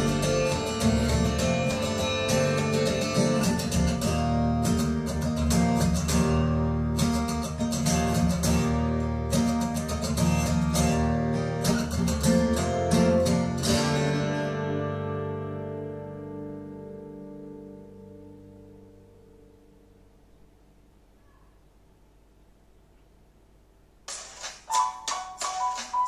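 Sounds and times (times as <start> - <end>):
acoustic guitar strumming: 0.0 - 20.3.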